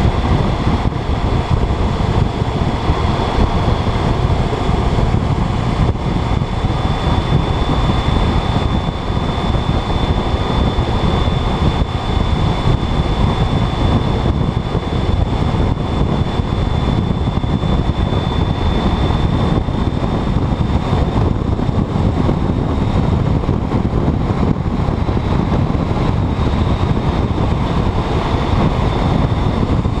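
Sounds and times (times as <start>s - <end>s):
motorcycle engine running: 0.0s - 30.0s
wind rushing over microphone: 0.0s - 30.0s.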